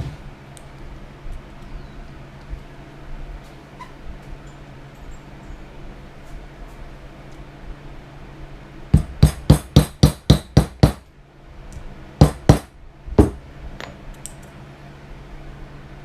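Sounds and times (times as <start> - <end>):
hammer strikes: 9.0 - 11.0, 12.2 - 14.0.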